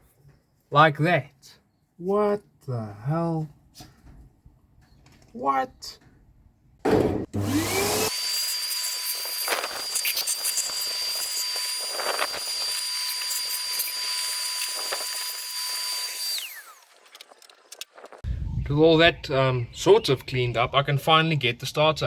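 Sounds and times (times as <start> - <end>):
shop vacuum whining: 6.9 - 16.8.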